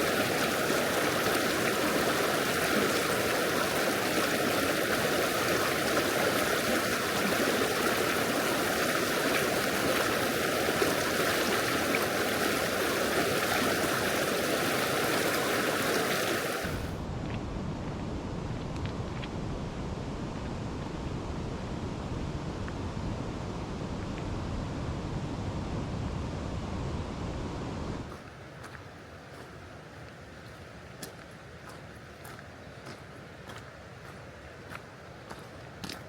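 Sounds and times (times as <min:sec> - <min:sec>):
river water rushing: 0:00.0 - 0:17.0, 0:28.1 - 0:36.0.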